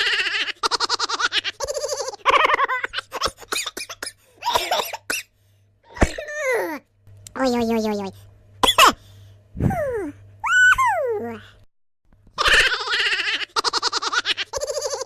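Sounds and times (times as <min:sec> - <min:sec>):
comic laughing voice: 0:00.0 - 0:03.5, 0:12.3 - 0:15.0.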